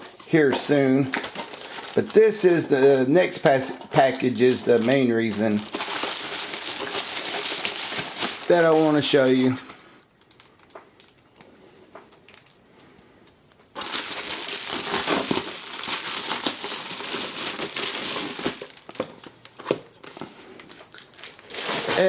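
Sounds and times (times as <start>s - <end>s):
packaging crinkling and tearing: 1.0s - 2.6s, 3.9s - 9.6s, 12.1s - 12.6s, 13.7s - 22.0s.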